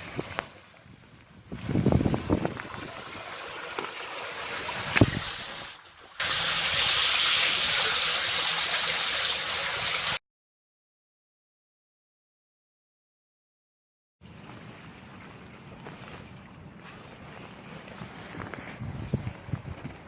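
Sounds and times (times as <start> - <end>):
water gushing and splashing: 0.0 - 0.8, 1.4 - 10.2.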